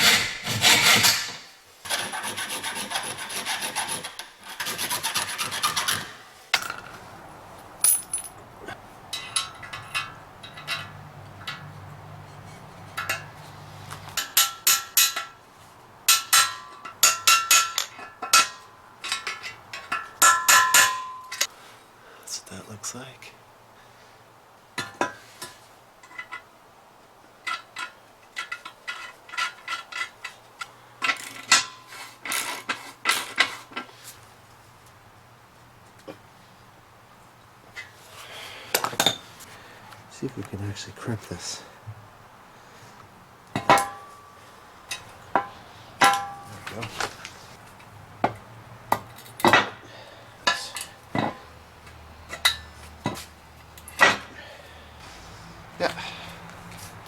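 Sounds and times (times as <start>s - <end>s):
metal parts and tools clinking: 7.8s - 8.4s, 9.1s - 11.7s
metal-on-metal clanks: 9.1s - 13.4s, 14.1s - 15.4s, 16.1s - 21.5s, 43.6s - 47.1s.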